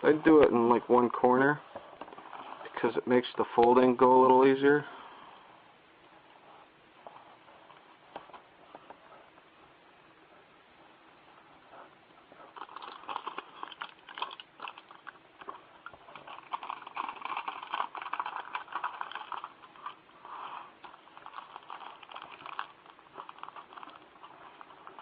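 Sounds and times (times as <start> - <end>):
aluminum foil crinkling: 12.5 - 25.0.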